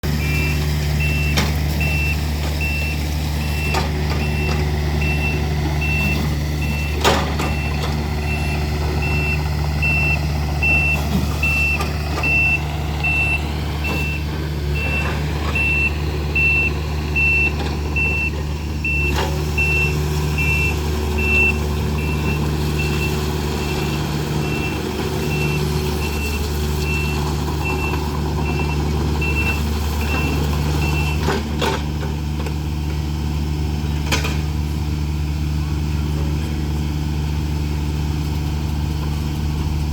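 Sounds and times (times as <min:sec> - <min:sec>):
excavator diesel engine running: 0:00.0 - 0:39.9
travel alarm beeping: 0:00.2 - 0:31.2.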